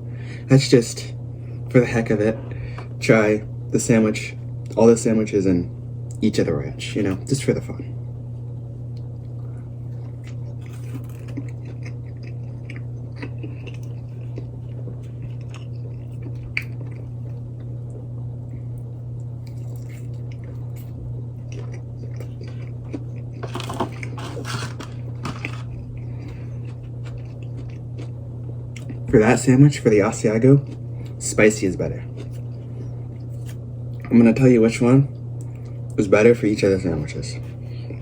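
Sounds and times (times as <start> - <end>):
low hum: 0.0 - 38.0
person chewing crunchy food: 8.8 - 29.1, 30.2 - 31.3, 32.0 - 34.1.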